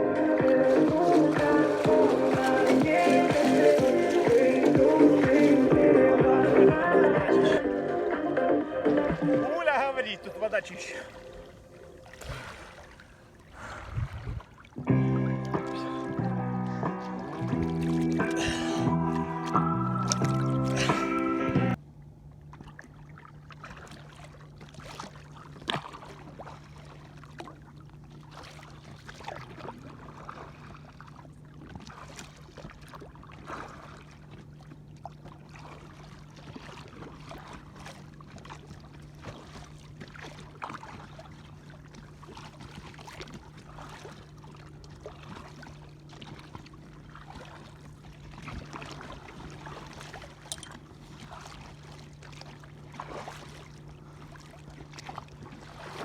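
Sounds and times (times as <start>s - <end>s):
waves splashing against kayak hull: 0.0s - 21.6s, 22.5s - 56.0s
steady low hum: 32.4s - 56.0s.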